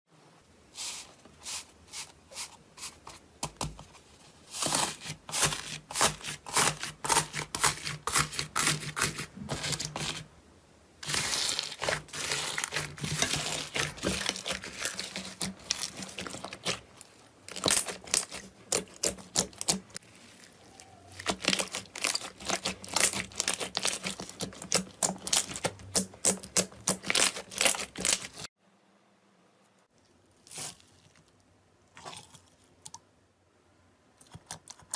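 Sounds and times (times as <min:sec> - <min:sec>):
slime squished crackling: 0:11.0 - 0:28.5.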